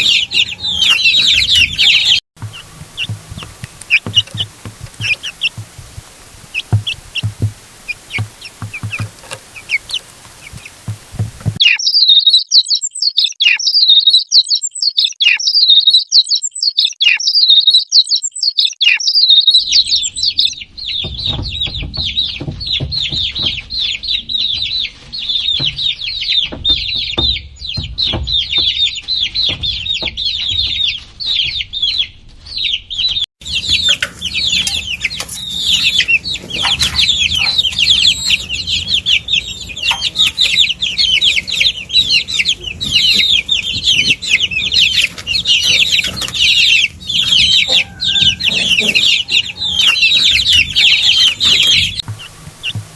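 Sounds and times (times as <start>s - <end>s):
low thumps: 0.0s - 11.6s
baby chicks peeping: 0.0s - 52.9s.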